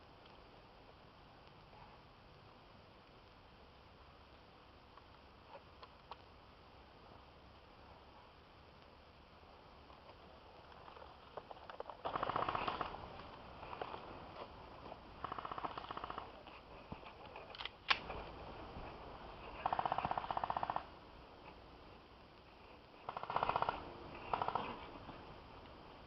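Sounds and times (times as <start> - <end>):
airsoft guns firing bursts: 12.0 - 13.0, 15.2 - 16.2, 19.6 - 20.9, 23.0 - 24.8
sharp crack: 15.1 - 18.4.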